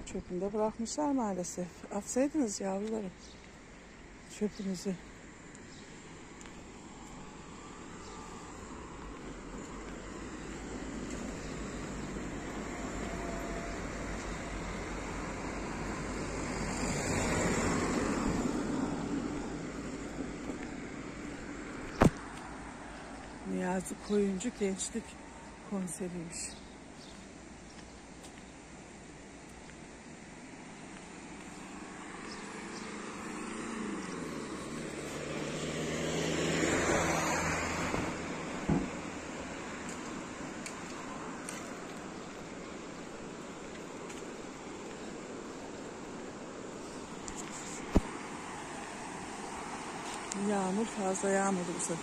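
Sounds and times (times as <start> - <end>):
vehicle passing: 6.8 - 22.9, 31.6 - 41.6
car driving past: 31.8 - 39.5
short thump: 37.9 - 39.0.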